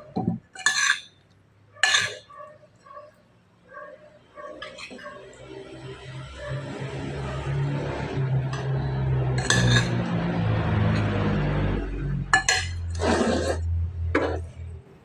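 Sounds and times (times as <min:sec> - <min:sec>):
cutlery and dishes clinking: 0:00.2 - 0:02.3, 0:09.3 - 0:10.0, 0:12.4 - 0:13.6.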